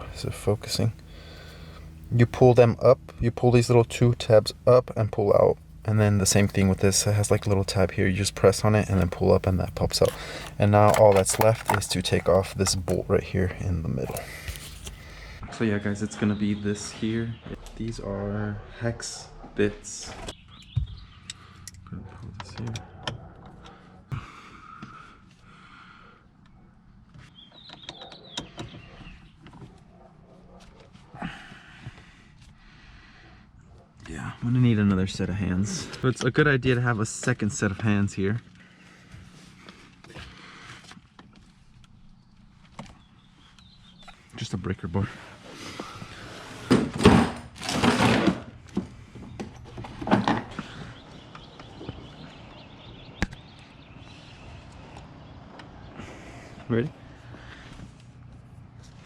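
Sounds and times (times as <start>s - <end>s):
hand tools clicking and knocking: 5.9s - 15.4s.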